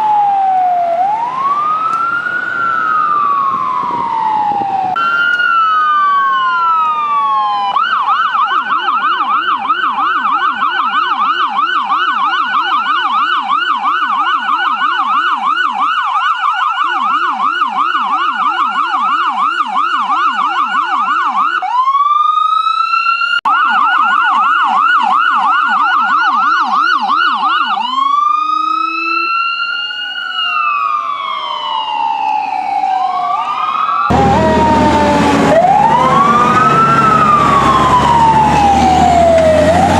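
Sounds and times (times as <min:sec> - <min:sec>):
electronic siren wailing and yelping: 0:00.0 - 0:39.9
lower-pitched yelping tone: 0:26.4 - 0:29.5.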